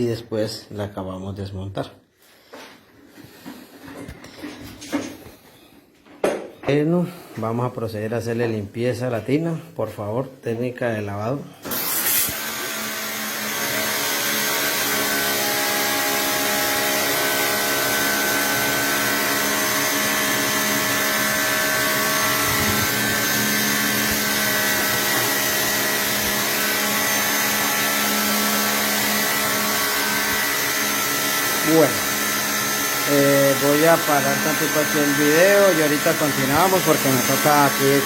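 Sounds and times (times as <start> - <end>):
electric motor whining: 11.7 - 38.0.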